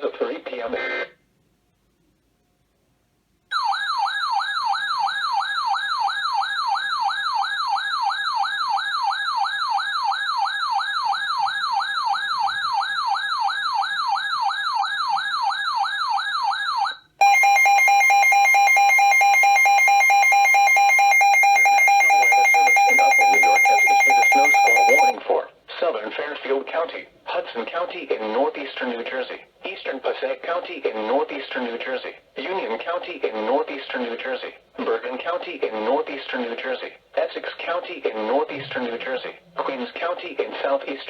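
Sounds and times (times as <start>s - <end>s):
shrill two-tone attention signal: 17.2s - 25.2s.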